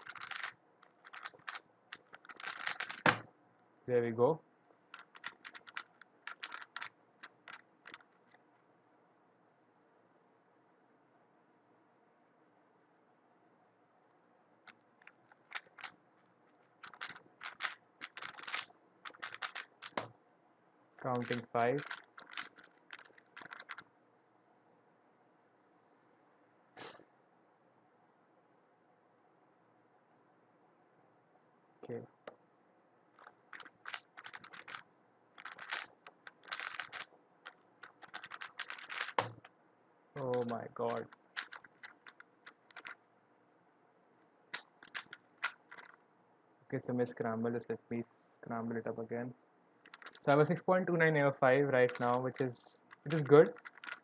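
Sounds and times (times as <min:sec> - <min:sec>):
puzzle cube plastic clicks: 0:00.0 - 0:03.2, 0:04.9 - 0:08.4, 0:14.7 - 0:20.1, 0:21.0 - 0:23.9, 0:33.2 - 0:34.8, 0:35.4 - 0:39.5, 0:40.2 - 0:43.0, 0:44.5 - 0:46.0, 0:49.8 - 0:50.6, 0:51.8 - 0:54.0.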